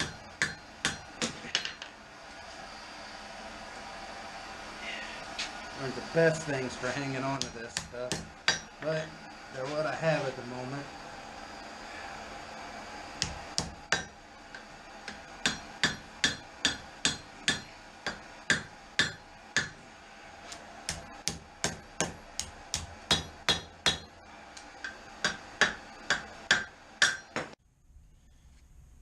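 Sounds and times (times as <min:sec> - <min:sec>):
hammer striking steel on anvil: 0:00.0 - 0:01.9, 0:07.3 - 0:09.0, 0:13.2 - 0:19.8, 0:20.9 - 0:24.2, 0:24.8 - 0:27.6
steady background hum: 0:00.0 - 0:29.0.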